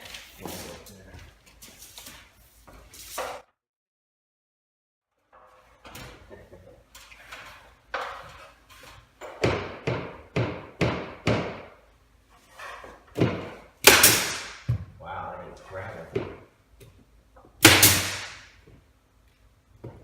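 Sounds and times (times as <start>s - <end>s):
hammer knocks on wood: 9.4s - 11.8s, 13.1s - 13.6s.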